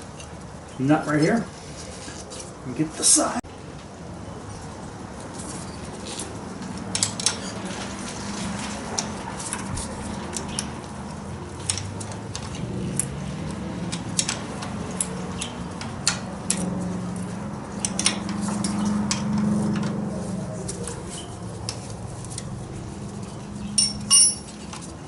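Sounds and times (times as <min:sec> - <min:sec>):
metallic clinks and taps: 0:23.7 - 0:24.8.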